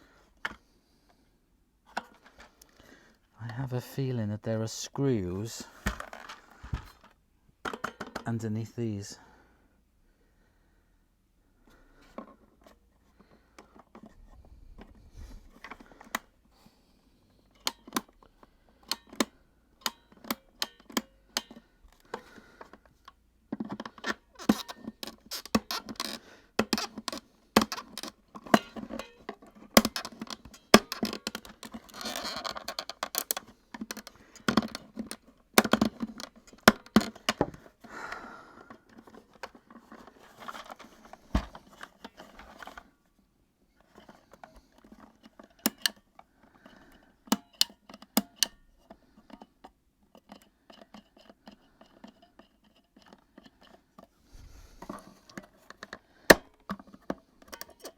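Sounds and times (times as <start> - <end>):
rattling and scraping of plastic: 1.8 - 3.4, 5.6 - 8.3, 11.7 - 16.4, 17.6 - 43.0, 43.8 - 57.9
plastic parts clicking: 5.8 - 8.3, 17.6 - 42.9, 43.8 - 54.1, 54.8 - 57.9.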